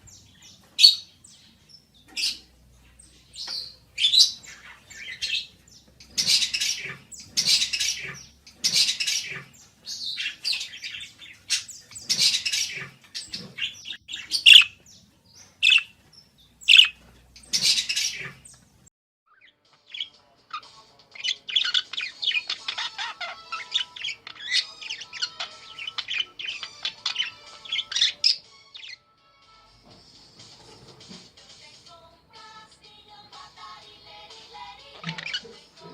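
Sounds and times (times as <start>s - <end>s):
budgerigar chirping and warbling: 2.1s - 2.5s, 3.4s - 15.9s, 16.6s - 18.4s, 19.3s - 29.0s, 34.8s - 35.9s.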